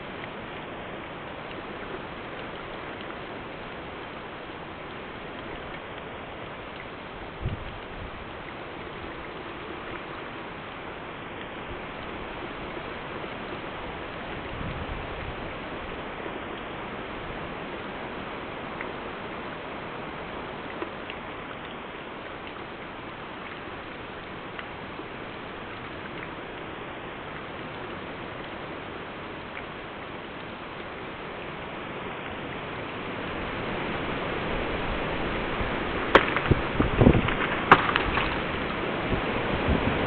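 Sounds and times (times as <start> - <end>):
wind rushing through trees: 0.0 - 40.0
sharp crack: 36.1 - 38.6.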